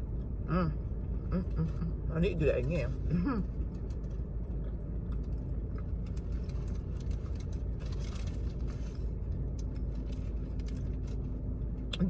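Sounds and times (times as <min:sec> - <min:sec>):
car engine rumble inside cabin: 0:00.0 - 0:12.0.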